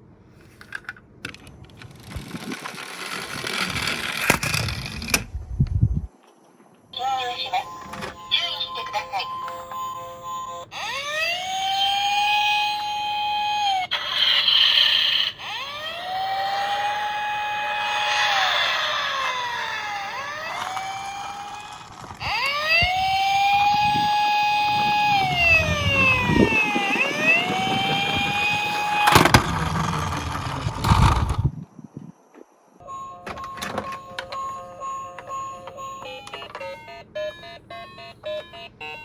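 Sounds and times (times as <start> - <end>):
toy police siren wailing: 7.0 - 31.4, 32.8 - 39.0
low rumbling noise: 18.1 - 32.0.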